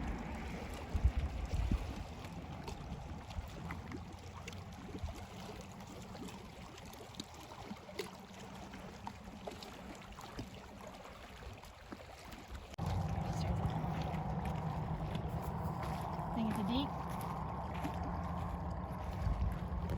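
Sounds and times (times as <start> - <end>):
low rumble: 0.0 - 5.0, 12.8 - 19.9
water sounds: 0.0 - 19.9.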